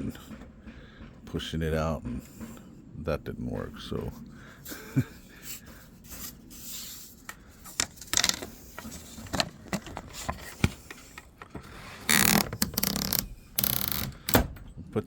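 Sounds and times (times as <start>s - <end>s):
wood scraping: 5.2s - 14.4s.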